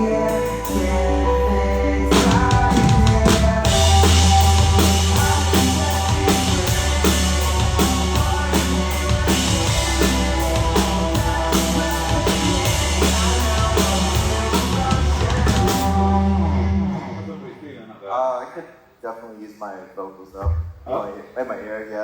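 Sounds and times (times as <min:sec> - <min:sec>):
bass guitar: 0:00.0 - 0:17.4
electric guitars: 0:00.0 - 0:17.4
drum kit steady beat: 0:02.1 - 0:16.2
rock band playing: 0:02.1 - 0:17.2.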